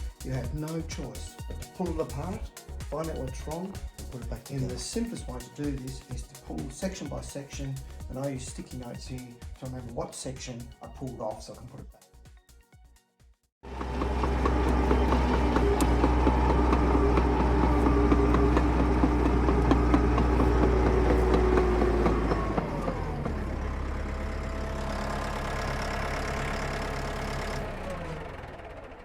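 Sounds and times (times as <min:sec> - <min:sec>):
toy bulldozer motor drone: 0:13.7 - 0:29.0.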